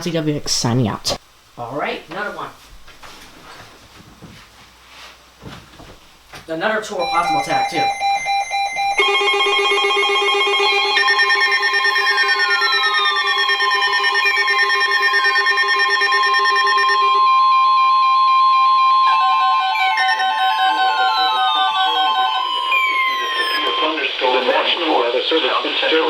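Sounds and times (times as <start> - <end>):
pulsing beeping tones: 7.0 - 24.4
long steady high tone: 7.0 - 25.3.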